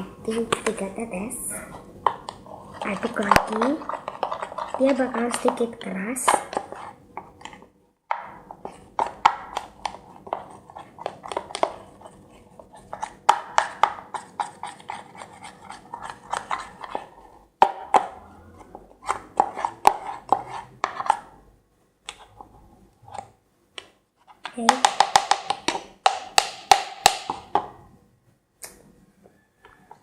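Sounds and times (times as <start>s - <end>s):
utensil stirring slime in a bowl: 0.3s - 7.6s, 8.2s - 21.4s.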